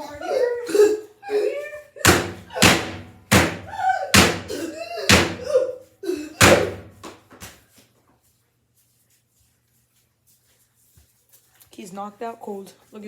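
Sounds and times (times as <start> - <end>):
slipper slapping metal: 2.1 - 5.6, 6.4 - 7.2.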